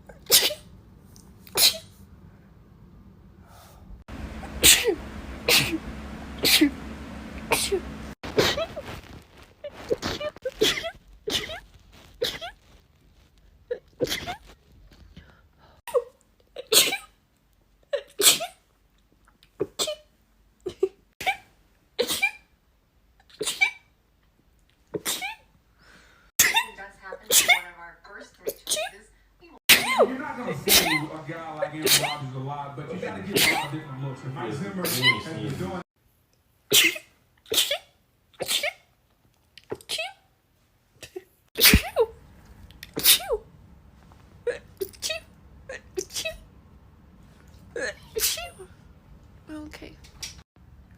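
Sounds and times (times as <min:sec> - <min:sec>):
person sneezing: 0:00.1 - 0:00.6, 0:01.5 - 0:02.0, 0:04.6 - 0:05.8, 0:07.5 - 0:08.9, 0:31.8 - 0:32.2, 0:33.4 - 0:33.7, 0:34.8 - 0:35.2, 0:36.7 - 0:38.8, 0:41.6 - 0:42.1, 0:42.9 - 0:43.4.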